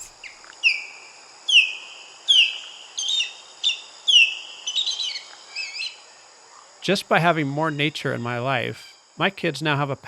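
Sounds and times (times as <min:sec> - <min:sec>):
osprey whistled calls: 0:00.0 - 0:06.0.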